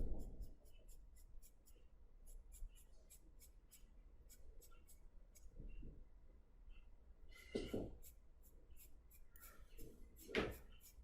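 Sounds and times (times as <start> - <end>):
drawing tool scratching on paper: 0.1 - 5.6, 7.8 - 11.0.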